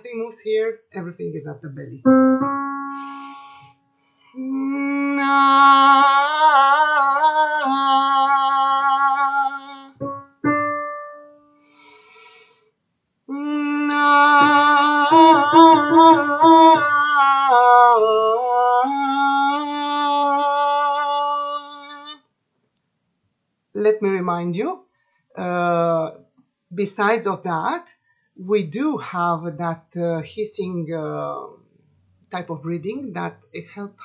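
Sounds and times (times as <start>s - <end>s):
piano note: 2.0s - 3.7s, 10.0s - 11.6s, 14.4s - 17.0s
woman singing with vibrato: 4.4s - 10.8s, 13.4s - 22.2s.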